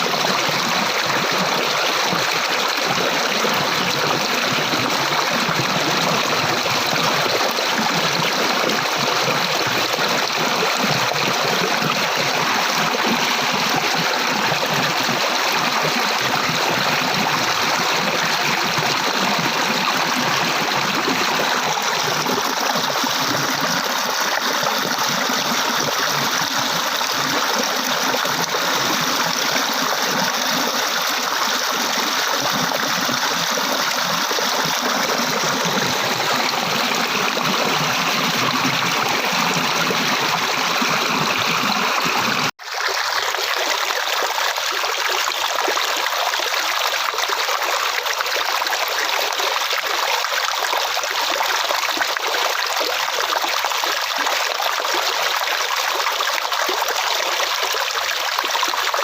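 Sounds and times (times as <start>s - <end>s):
stream water flowing: 0.0s - 59.0s.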